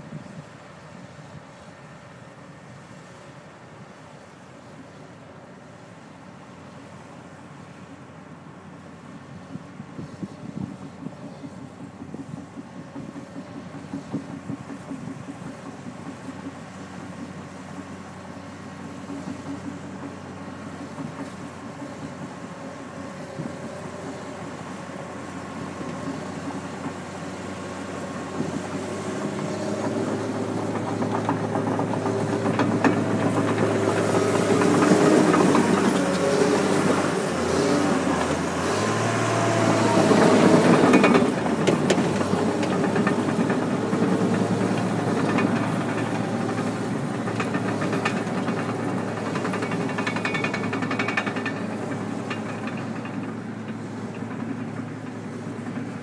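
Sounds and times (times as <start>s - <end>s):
diesel engine running: 0.0s - 56.0s
metallic track clatter: 11.7s - 56.0s.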